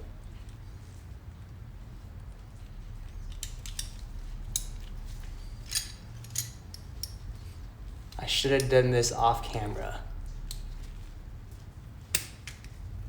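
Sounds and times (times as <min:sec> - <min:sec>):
low steady hum: 0:00.0 - 0:13.0
wrenches clicking on metal nut: 0:03.3 - 0:05.0, 0:05.6 - 0:07.2.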